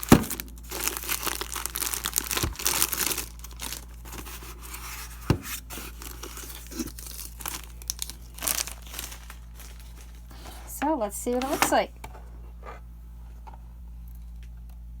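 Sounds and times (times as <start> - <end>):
packaging tearing and crinkling: 0.0 - 10.6.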